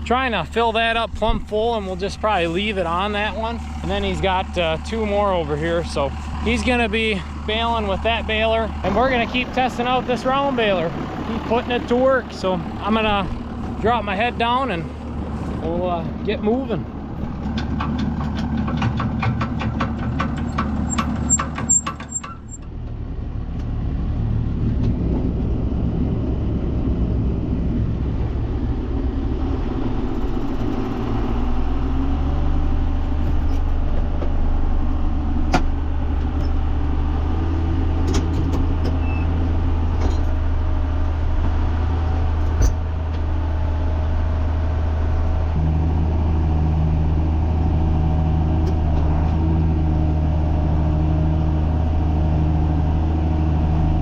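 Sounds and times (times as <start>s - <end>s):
diesel tractor engine running: 0.0s - 54.0s.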